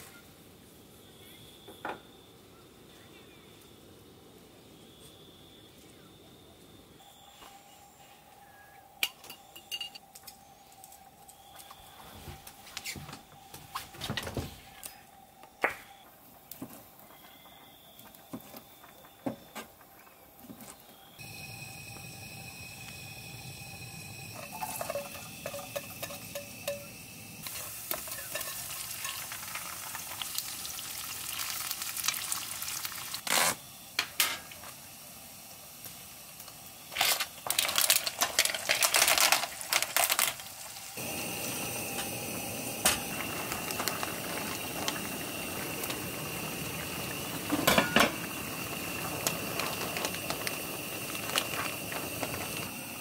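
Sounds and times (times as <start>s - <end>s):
food sizzling in a pan: 21.2s - 53.0s
utensils clattering against cookware: 24.4s - 29.4s, 47.5s - 48.3s.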